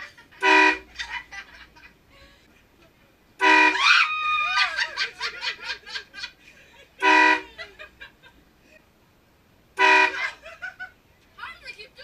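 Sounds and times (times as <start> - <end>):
person laughing: 4.4 - 8.8
loud train horn blasts: 9.8 - 10.2.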